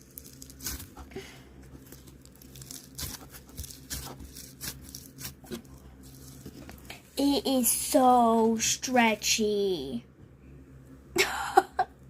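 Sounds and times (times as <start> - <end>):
slime crackling and popping: 0.0 - 1.0, 1.8 - 6.4.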